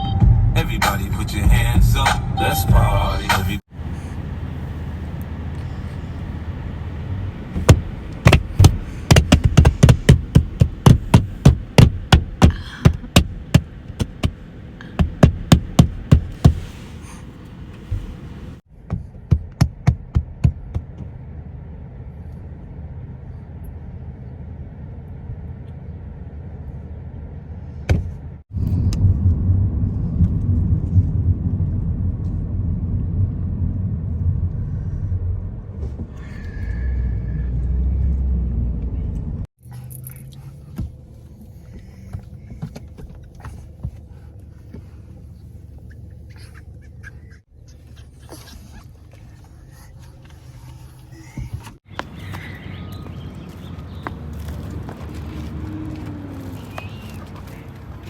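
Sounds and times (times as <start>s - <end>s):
car cabin rumble: 0.0s - 21.3s, 40.3s - 52.1s
sharp knocks: 7.6s - 14.4s.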